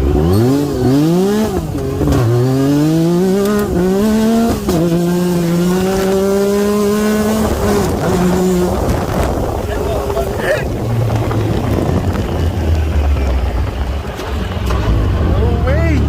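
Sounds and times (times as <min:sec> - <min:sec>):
atv engine accelerating: 0:00.0 - 0:16.0.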